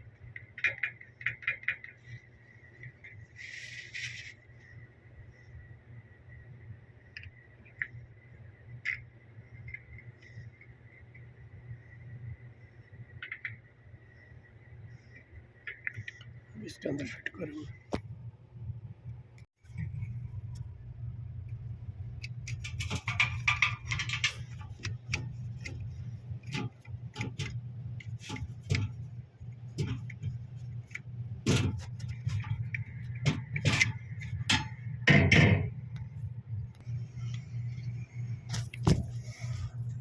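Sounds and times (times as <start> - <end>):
steady low hum: 0.0 - 40.0
clicks and knocks of parts handled: 22.2 - 36.1.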